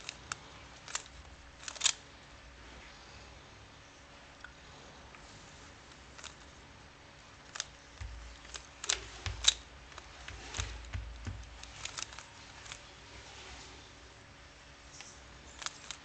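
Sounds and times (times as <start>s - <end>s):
puzzle cube layers clicking: 0.0s - 2.0s, 7.5s - 12.8s
dull handling knocks: 8.0s - 12.0s.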